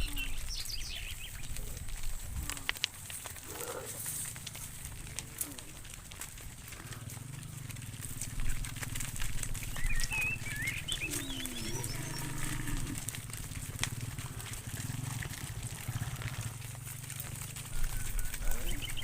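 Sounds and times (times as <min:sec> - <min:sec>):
birds chirping: 0:00.0 - 0:02.8, 0:06.6 - 0:19.0
cattle mooing: 0:01.4 - 0:19.0.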